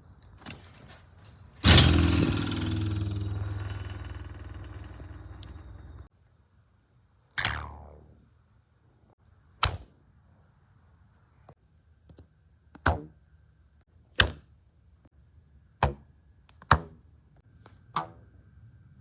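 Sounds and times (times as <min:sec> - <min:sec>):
sharp plucked string twangs: 0:01.7 - 0:06.1, 0:07.4 - 0:08.1.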